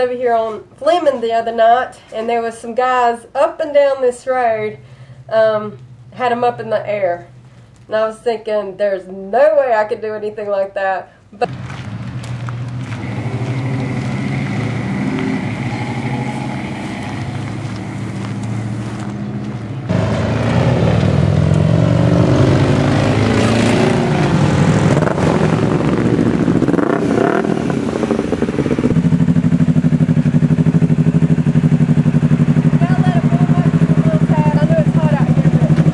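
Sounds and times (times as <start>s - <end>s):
motorcycle engine idling: 11.5s - 19.9s, 25.0s - 35.9s.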